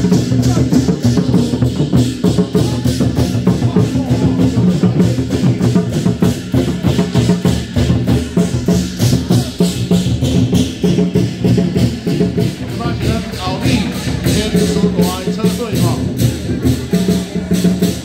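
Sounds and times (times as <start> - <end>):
loud music with fast drum beat: 0.0 - 18.0.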